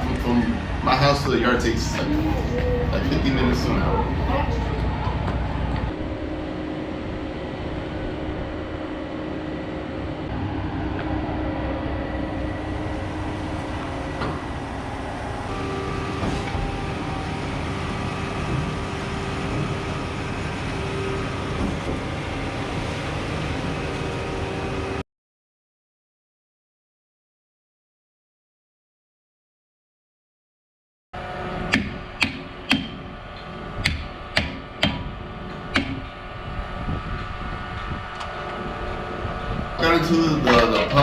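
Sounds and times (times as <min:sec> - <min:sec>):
faint steady tones: 0:00.0 - 0:22.6
vehicle rumble: 0:00.0 - 0:25.0.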